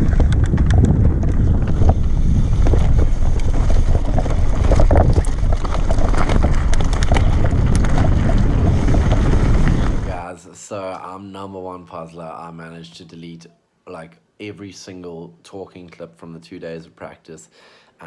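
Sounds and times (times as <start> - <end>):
wind buffeting microphone: 0.0 - 10.2
small clicks and rattles: 2.6 - 9.8.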